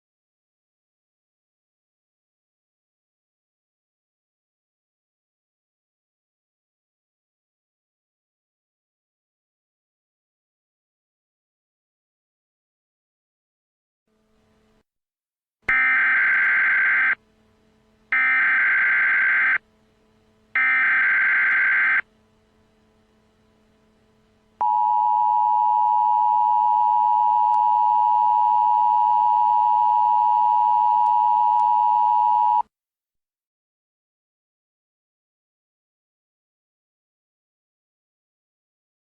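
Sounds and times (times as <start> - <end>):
screeching data bursts: 18.2 - 19.6, 20.6 - 22.0.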